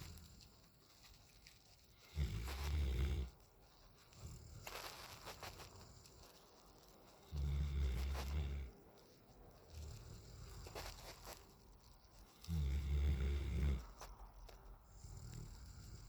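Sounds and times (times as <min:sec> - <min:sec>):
dog breathing: 0:00.0 - 0:16.0
dog snoring: 0:02.0 - 0:03.4, 0:07.2 - 0:08.8, 0:12.4 - 0:14.0, 0:14.9 - 0:16.0.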